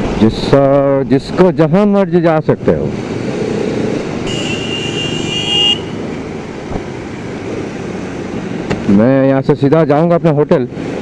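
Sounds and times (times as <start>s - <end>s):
city traffic noise: 0.0s - 11.0s
vehicle horn honking: 4.2s - 6.0s.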